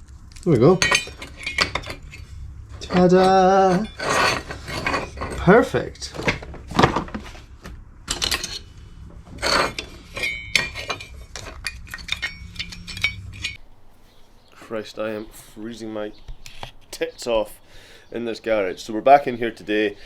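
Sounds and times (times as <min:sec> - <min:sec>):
steel parts clinking and clicking: 0:00.4 - 0:13.6
short metallic rings: 0:00.6 - 0:06.6, 0:08.1 - 0:13.6.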